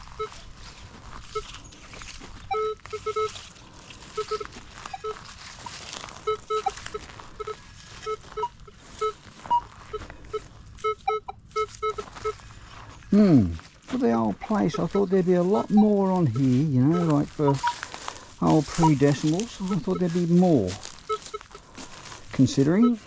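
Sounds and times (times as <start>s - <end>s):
metal detector higher beep: 0.0s - 0.5s, 1.3s - 1.6s, 2.4s - 3.5s, 4.1s - 12.6s, 14.0s - 17.9s, 18.5s - 21.6s, 22.4s - 23.0s
metal detector short low beeps: 0.0s - 0.6s, 1.3s - 1.6s, 2.4s - 3.5s, 4.1s - 12.6s, 14.4s - 17.8s, 18.5s - 21.6s.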